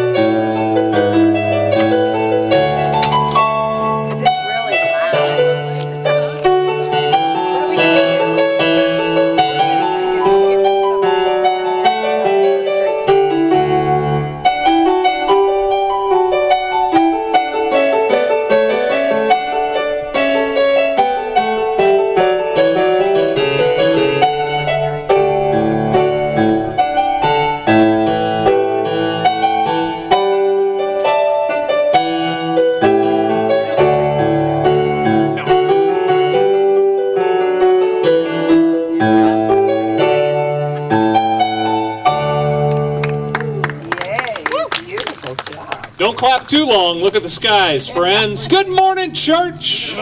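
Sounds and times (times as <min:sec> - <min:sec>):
piano piece: 0:00.0 - 0:50.0.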